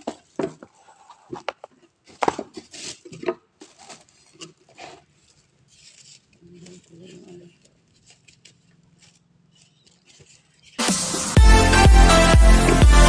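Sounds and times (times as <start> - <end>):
objects knocked and handled: 0.0 - 5.2.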